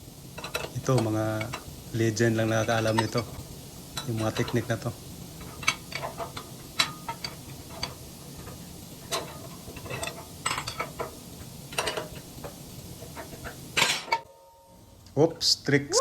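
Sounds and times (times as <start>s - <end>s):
metal tools clinking on steel: 2.5s - 3.4s, 5.4s - 8.0s, 9.0s - 12.3s.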